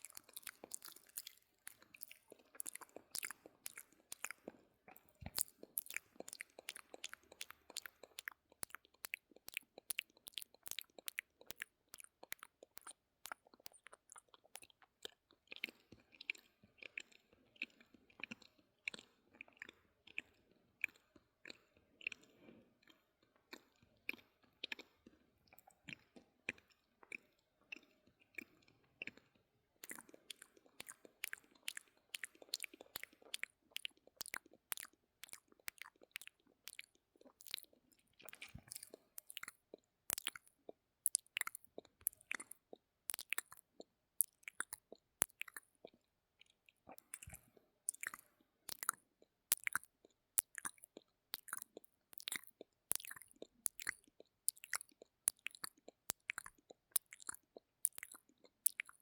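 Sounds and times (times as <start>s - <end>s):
wet lip and tongue clicks: 0.0s - 59.0s.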